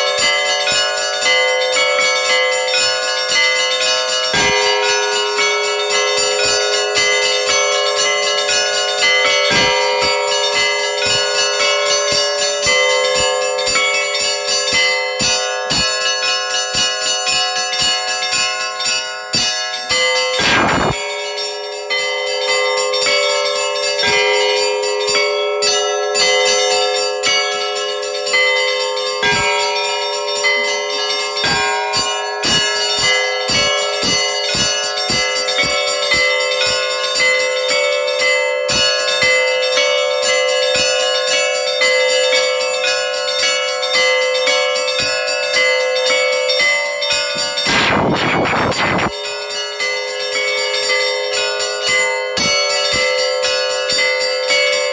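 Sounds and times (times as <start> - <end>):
church bells ringing a peal: 0.0 - 54.9
hum of large bells: 0.0 - 54.9
rapid strokes on small bells: 0.0 - 54.9
rush of noise: 20.4 - 21.0, 47.7 - 49.2.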